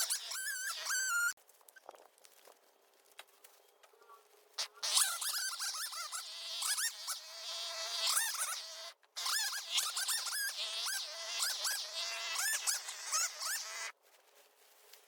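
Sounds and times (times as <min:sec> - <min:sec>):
high squeaky animal calls: 0:00.0 - 0:01.4, 0:04.6 - 0:13.9.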